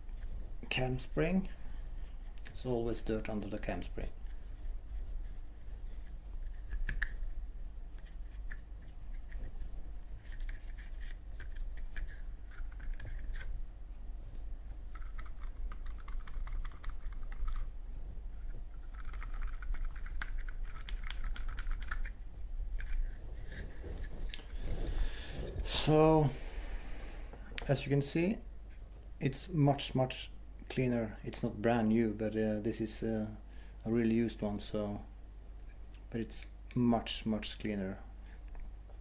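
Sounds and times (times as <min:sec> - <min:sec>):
steady low hum: 0:00.0 - 0:39.0
cotton swab scratchy rubbing: 0:03.8 - 0:13.5, 0:14.9 - 0:25.9.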